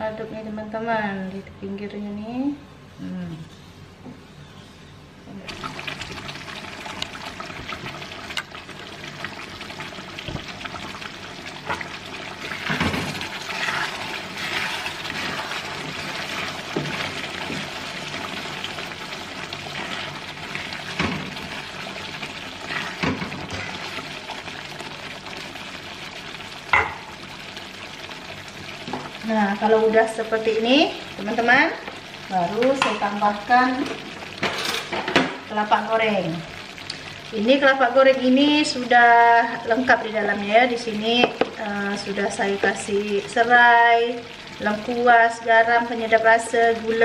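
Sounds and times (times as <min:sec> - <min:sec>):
food sizzling in oil: 0:05.5 - 0:47.0
spatula scraping pan: 0:12.5 - 0:16.2.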